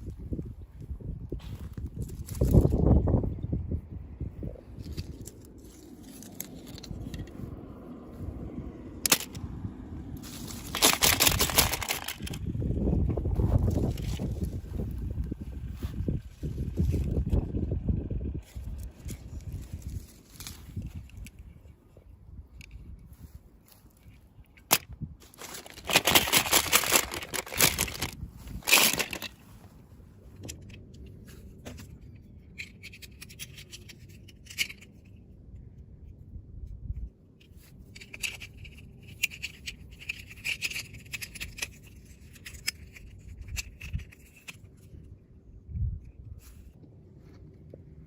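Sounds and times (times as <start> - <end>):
plastic packaging crinkling and tearing: 10.2 - 12.4, 24.7 - 29.6.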